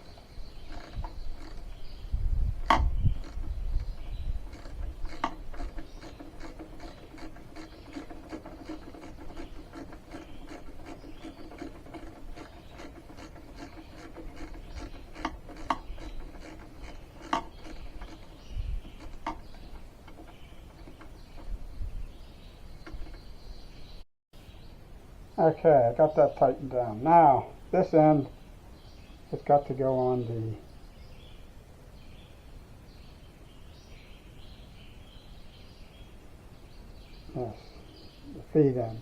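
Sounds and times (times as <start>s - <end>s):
ratchet tool clicking: 2.6s - 21.6s.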